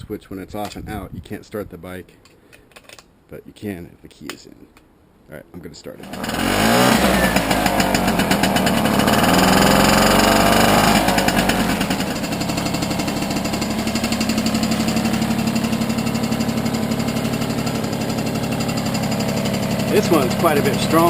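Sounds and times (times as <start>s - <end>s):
moped engine revving and idling: 6.0s - 21.0s.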